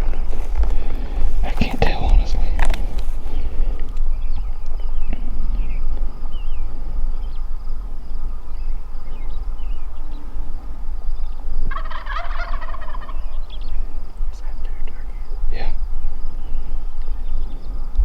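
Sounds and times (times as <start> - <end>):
small birds chirping: 0.0 - 18.0
steady low rumble: 0.0 - 18.0
turkey gobbling: 8.5 - 14.4.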